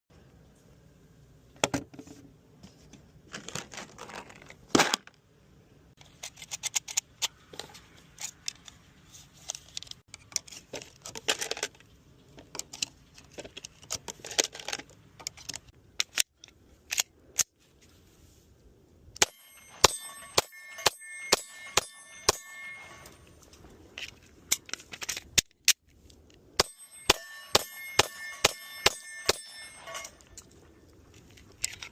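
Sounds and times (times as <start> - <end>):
ringing tone: 19.2 - 23.4, 26.6 - 30.4.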